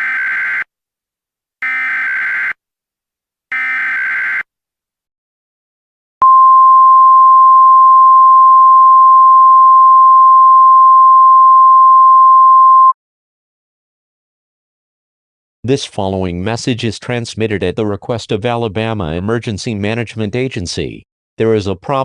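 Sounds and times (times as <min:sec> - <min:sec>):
single-pitch warning alarm tone: 0:01.6 - 0:02.5, 0:03.5 - 0:04.4.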